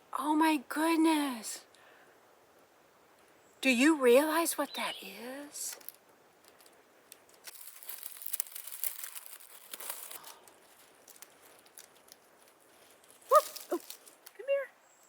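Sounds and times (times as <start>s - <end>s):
brush rustling: 4.8s - 14.7s.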